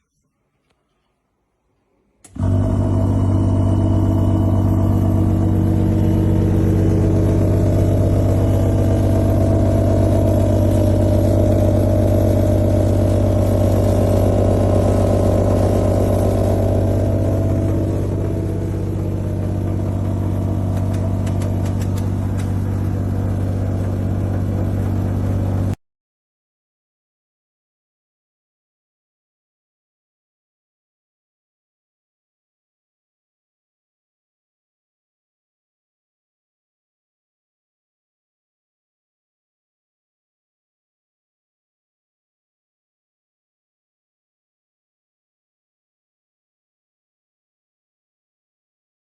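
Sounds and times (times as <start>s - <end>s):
loud engine-like drone: 2.3s - 25.8s.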